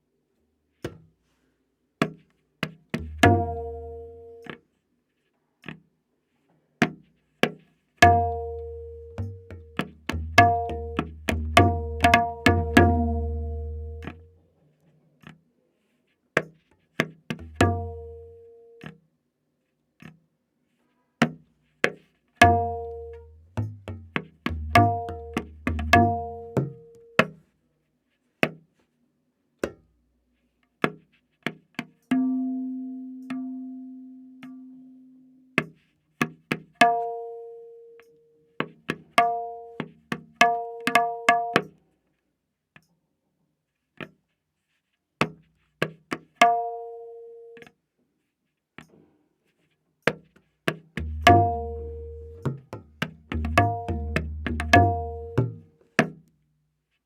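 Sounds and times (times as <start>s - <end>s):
tabla strokes ringing: 2.1s - 4.6s, 6.8s - 14.4s, 16.4s - 19.0s, 22.4s - 27.4s, 32.0s - 41.8s, 45.2s - 47.7s, 50.1s - 56.2s.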